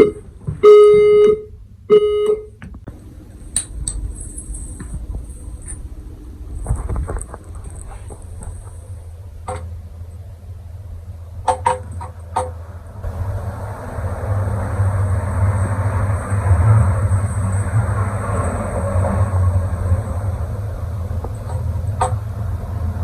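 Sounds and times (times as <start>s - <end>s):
low hum: 0.0s - 23.0s
low mechanical rumble: 0.0s - 23.0s
sharp knocks and clicks: 9.4s - 9.7s, 11.4s - 12.6s, 21.2s - 22.2s.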